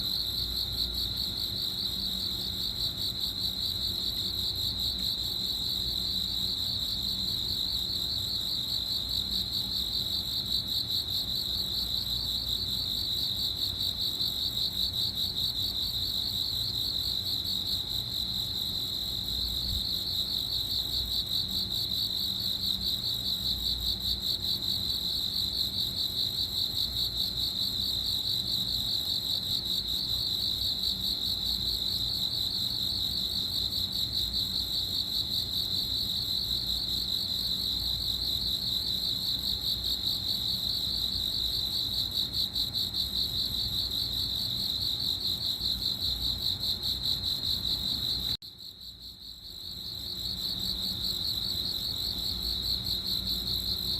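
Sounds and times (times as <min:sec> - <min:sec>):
cricket chirping: 0:00.0 - 0:53.9.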